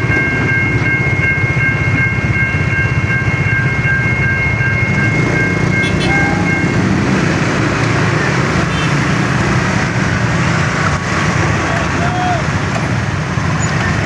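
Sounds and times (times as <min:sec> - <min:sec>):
level crossing alarm tone: 0:00.0 - 0:10.2
passing train rumble: 0:00.0 - 0:14.0.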